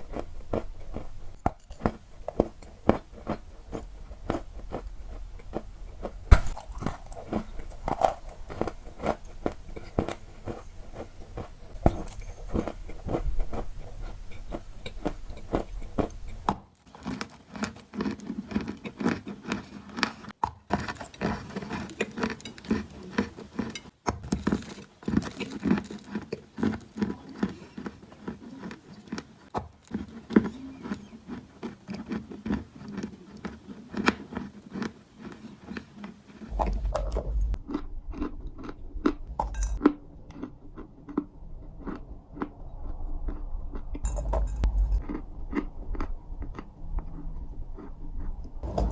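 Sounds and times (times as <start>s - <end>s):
low background hum: 0.0s - 16.5s, 30.1s - 48.9s
crunchy snack chewing: 0.0s - 48.8s.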